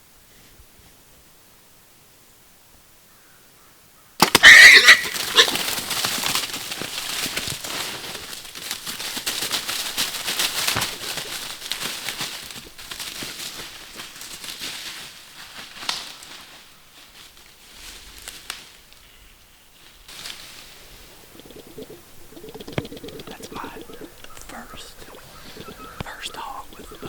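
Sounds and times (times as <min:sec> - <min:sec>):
animals crashing through brush: 0:04.2 - 0:19.0, 0:19.8 - 0:27.0
hog squealing: 0:04.3 - 0:05.7, 0:21.6 - 0:27.0.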